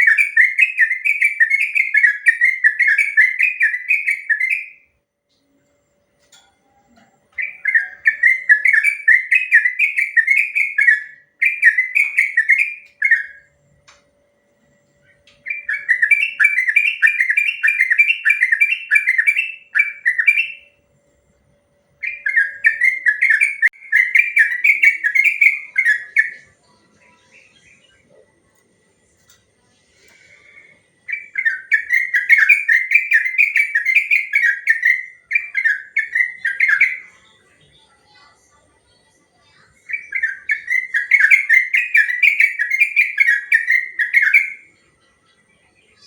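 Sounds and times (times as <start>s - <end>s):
bird singing whistled phrases: 0.0s - 4.9s, 7.3s - 13.5s, 15.0s - 20.7s, 22.0s - 26.6s, 30.4s - 37.2s, 39.5s - 44.7s.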